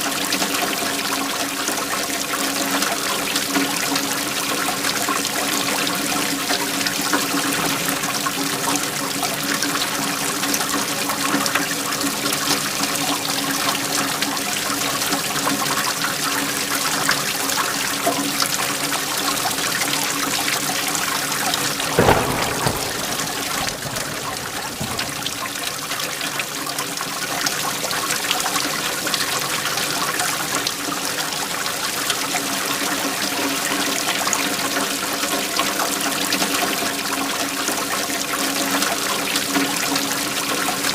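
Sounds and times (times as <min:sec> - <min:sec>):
heavy rain hissing: 0:21.3 - 0:26.2
thunder crack: 0:21.3 - 0:26.6.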